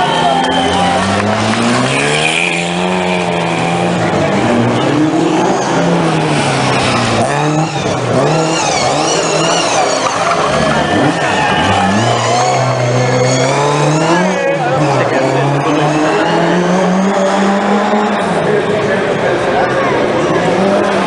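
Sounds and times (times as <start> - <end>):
rally car engine revving: 0.0 - 21.0
tyre squeal: 5.2 - 14.5.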